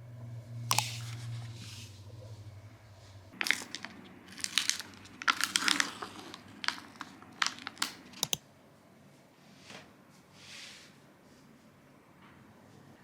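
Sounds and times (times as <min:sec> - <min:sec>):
crinkly wrapping rustling: 0:03.4 - 0:08.4.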